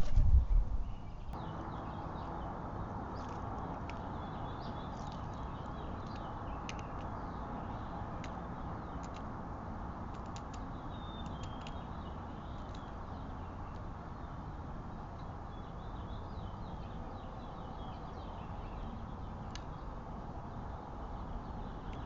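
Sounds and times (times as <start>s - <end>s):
outdoor background hiss: 0.0s - 22.0s
small birds twittering: 0.5s - 22.0s
sharp clicks: 6.0s - 7.1s, 10.1s - 11.8s.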